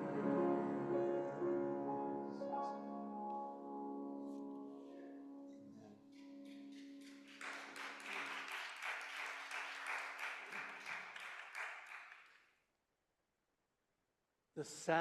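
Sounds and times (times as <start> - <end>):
piano chord ringing: 0.0 - 5.9
audience clapping: 6.1 - 12.5.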